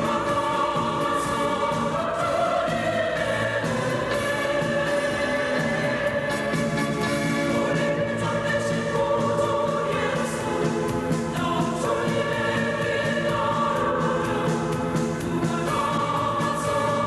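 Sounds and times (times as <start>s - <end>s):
mixed choir singing a hymn: 0.0s - 17.0s.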